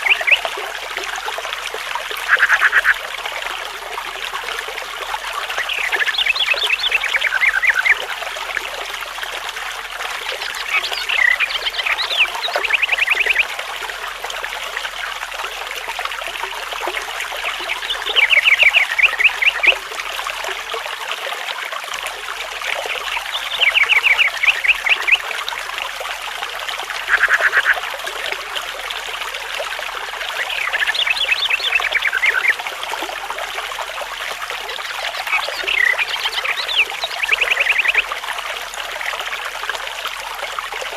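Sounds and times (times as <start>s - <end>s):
trickle of running water: 0.0s - 40.9s
rapid trilling animal calls: 2.2s - 3.0s, 27.0s - 27.8s.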